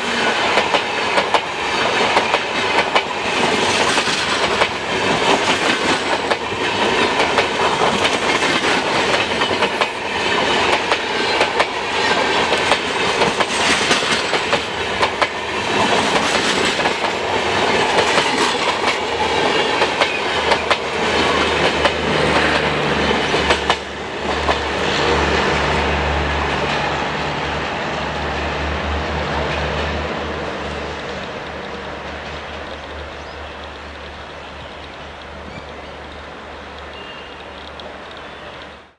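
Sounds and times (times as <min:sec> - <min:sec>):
train low rumble: 0:00.0 - 0:38.9
train wheels clattering over rail joints: 0:00.1 - 0:25.0.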